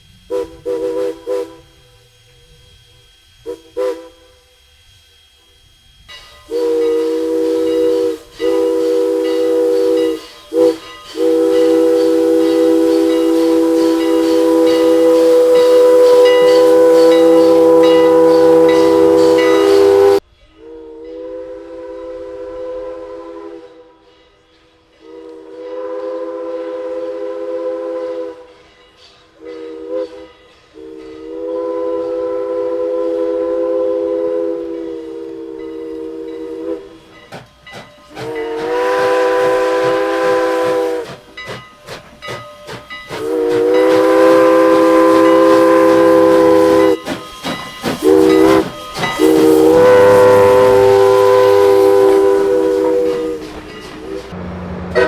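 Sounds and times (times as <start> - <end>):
locomotive chime horn: 6.2 - 28.6, 38.2 - 41.0, 43.2 - 47.1, 48.0 - 55.0.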